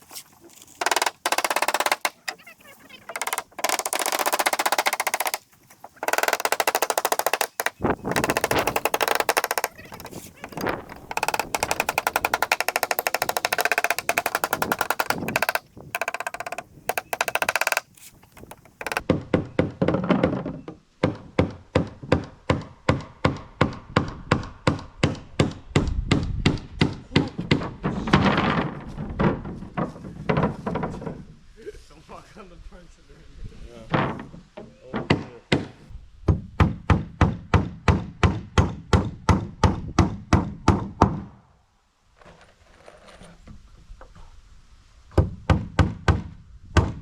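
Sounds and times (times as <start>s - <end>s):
hammer striking nails into wood: 0.8s - 2.2s, 3.2s - 5.4s, 6.0s - 20.0s.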